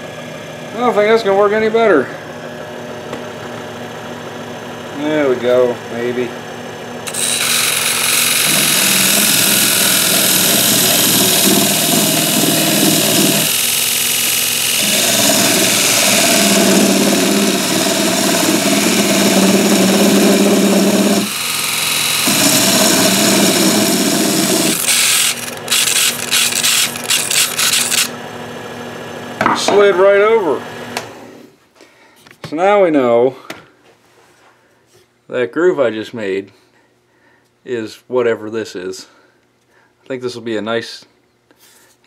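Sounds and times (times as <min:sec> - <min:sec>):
parting tool cutting spinning wood: 0:03.5 - 0:28.2
wood lathe running: 0:03.5 - 0:28.2.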